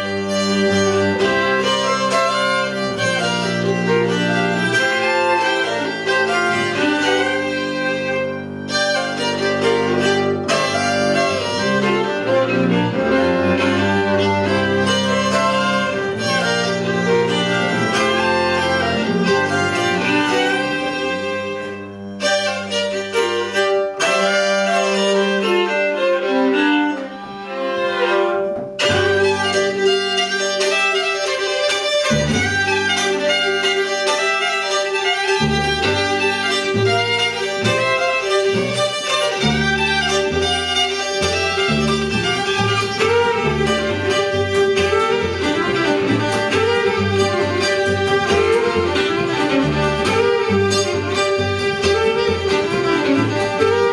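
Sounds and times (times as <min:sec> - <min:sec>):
fiddle tune: 0:00.0 - 0:53.9
string accompaniment: 0:00.0 - 0:53.9.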